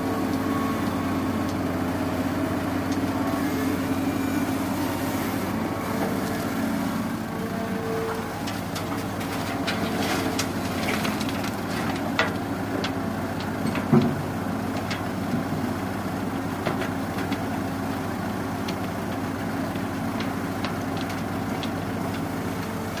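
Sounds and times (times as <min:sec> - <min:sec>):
diesel engine running: 0:00.0 - 0:23.0
metal clanks and knocks: 0:08.1 - 0:15.7.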